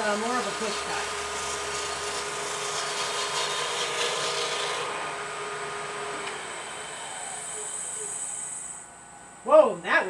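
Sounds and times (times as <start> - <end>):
gouge scraping on lathe: 0.0 - 5.0, 6.2 - 8.8
lathe humming: 0.0 - 9.0.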